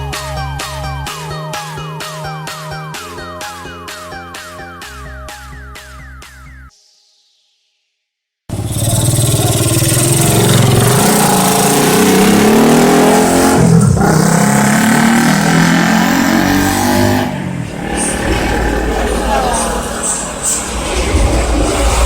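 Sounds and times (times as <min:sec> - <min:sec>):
bus engine revving: 0:08.5 - 0:22.0.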